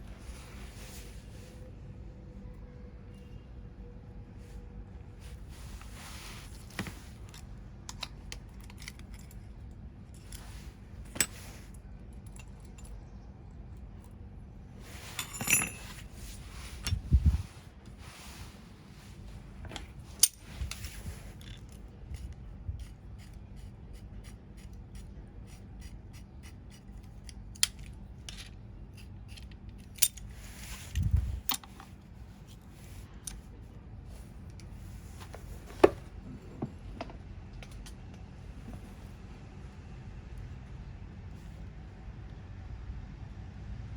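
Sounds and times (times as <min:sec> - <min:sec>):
metal tools clicking and clinking: 0:07.3 - 0:13.0, 0:15.0 - 0:17.2, 0:19.7 - 0:21.8, 0:29.3 - 0:31.9.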